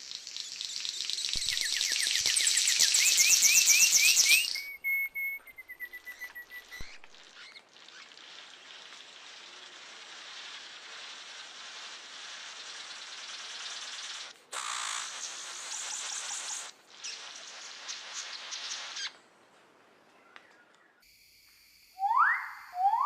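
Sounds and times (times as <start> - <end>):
faint steady hiss: 0.0 - 23.0
bird chirping rapidly: 0.2 - 8.9, 12.4 - 19.2.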